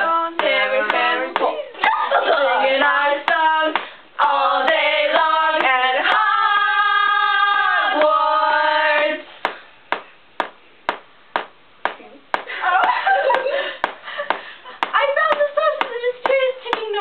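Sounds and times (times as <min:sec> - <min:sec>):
voices singing: 0:00.0 - 0:09.4.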